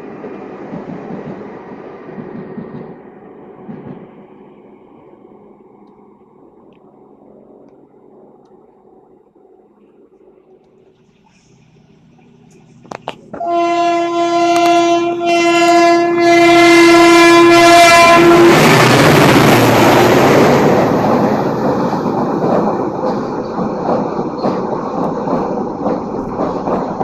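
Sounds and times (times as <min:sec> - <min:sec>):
train rushing past: 0:00.0 - 0:08.4, 0:11.2 - 0:27.0
train horn blast: 0:13.3 - 0:19.4
wheel clatter on rails: 0:21.0 - 0:27.0.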